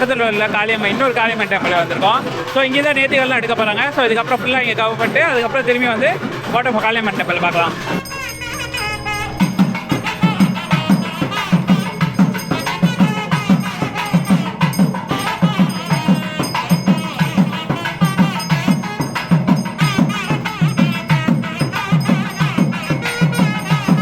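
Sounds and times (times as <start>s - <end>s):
fast steady drumming: 0.0s - 24.0s
wavering high-pitched melody: 5.9s - 23.8s.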